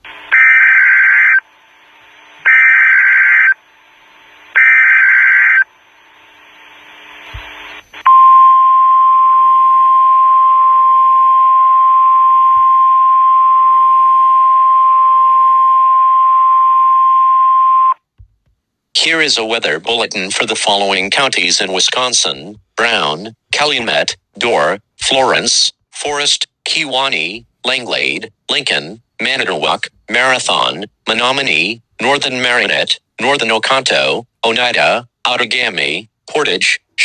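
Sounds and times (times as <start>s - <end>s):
single-pitch warning alarm tone: 0.0s - 1.7s, 2.4s - 3.7s, 4.5s - 5.8s, 8.0s - 18.0s
faint radio hiss: 0.0s - 8.1s
screeching digital data bursts: 0.3s - 1.4s, 2.5s - 3.6s, 4.6s - 5.7s.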